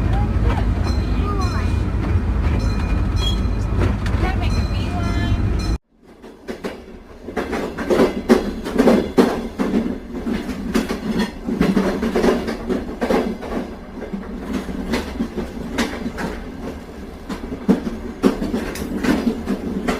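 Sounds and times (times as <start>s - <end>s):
rolling clatter with knocks: 6.0s - 19.9s.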